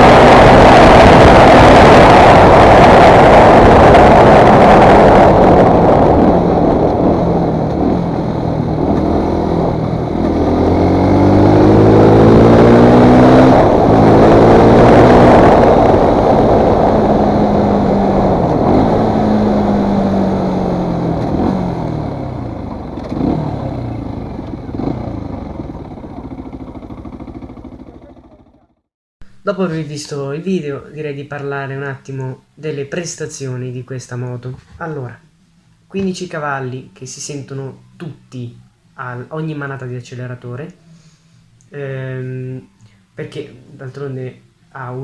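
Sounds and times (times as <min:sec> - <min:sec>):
motorcycle engine revving: 0:00.0 - 0:28.9.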